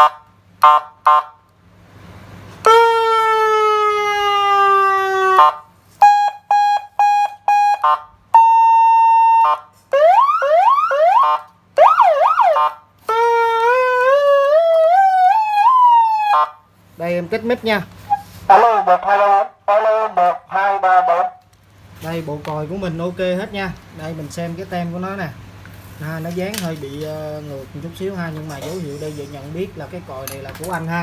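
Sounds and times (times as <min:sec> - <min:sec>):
electronic police siren: 0:02.6 - 0:16.6
short siren chirps: 0:02.6 - 0:16.6.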